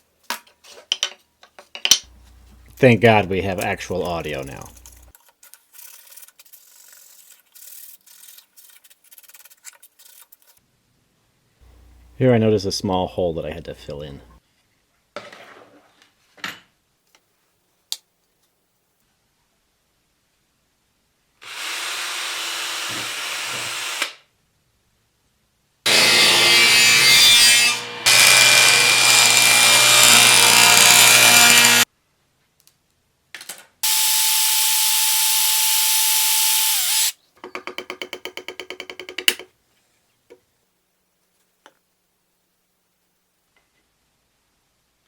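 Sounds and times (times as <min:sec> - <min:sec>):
power tools running: 0:25.9 - 0:27.0, 0:27.7 - 0:31.8, 0:33.8 - 0:37.2.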